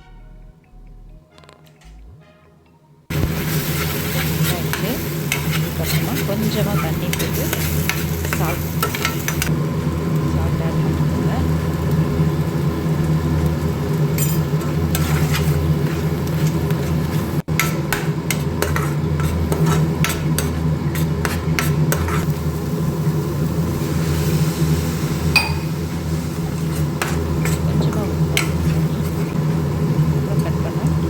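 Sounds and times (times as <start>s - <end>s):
spoon clinking against pan: 25.4s - 25.8s.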